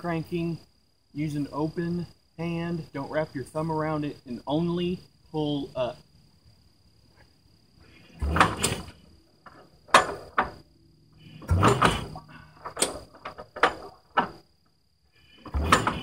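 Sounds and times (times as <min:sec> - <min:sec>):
engine crank clunks: 0:08.2 - 0:10.6, 0:11.3 - 0:14.4, 0:15.4 - 0:16.0.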